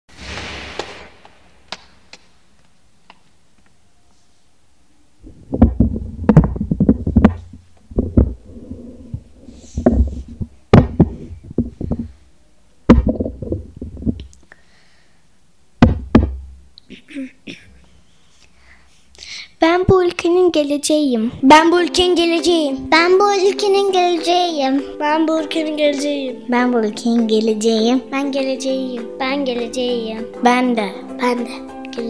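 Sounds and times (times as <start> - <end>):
knocks and dull thumps: 5.3 - 12.2, 12.9 - 14.2, 15.8 - 16.6.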